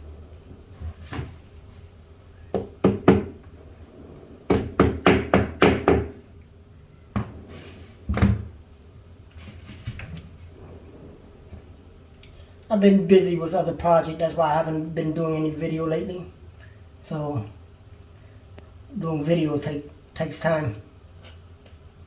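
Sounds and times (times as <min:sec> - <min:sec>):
hammer knocking wood: 0:02.5 - 0:03.4, 0:04.5 - 0:06.2.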